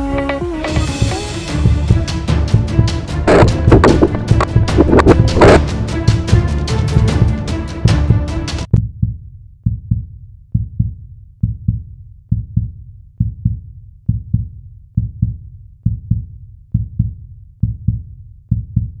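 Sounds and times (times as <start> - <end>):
music: 0.0 - 8.7
heartbeat-like double thump: 0.7 - 19.0.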